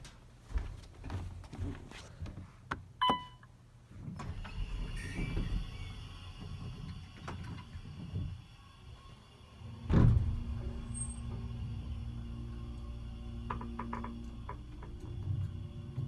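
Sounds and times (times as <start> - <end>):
elevator door motor whirring: 4.2 - 16.0
elevator ding: 4.4 - 6.8
faint high squeal: 4.5 - 7.8, 8.5 - 13.2.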